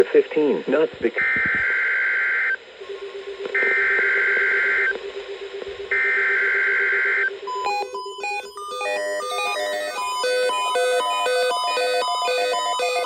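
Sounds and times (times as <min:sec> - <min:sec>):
digital data tone bursts: 0:01.0 - 0:05.0, 0:05.8 - 0:13.0.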